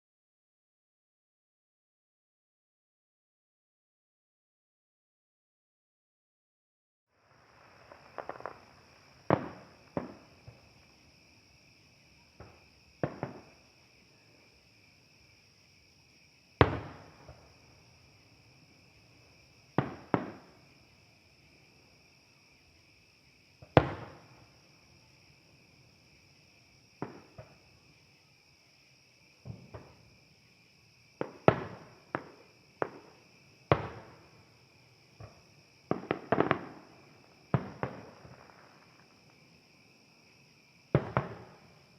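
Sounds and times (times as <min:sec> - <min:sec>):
distant fireworks bangs: 0:07.2 - 0:11.0, 0:12.3 - 0:13.7, 0:16.6 - 0:17.7, 0:19.7 - 0:20.7, 0:23.6 - 0:24.5, 0:27.0 - 0:27.6, 0:31.2 - 0:34.4, 0:35.2 - 0:39.3, 0:40.9 - 0:41.9.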